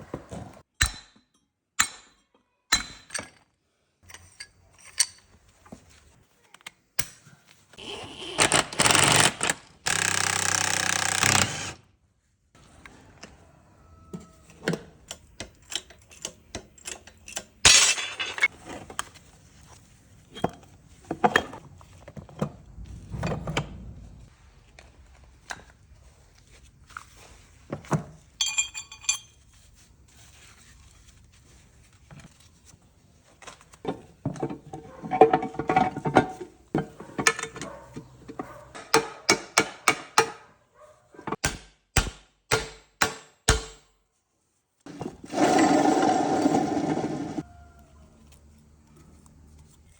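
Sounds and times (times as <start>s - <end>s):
metal gears clinking: 28.4s - 29.4s.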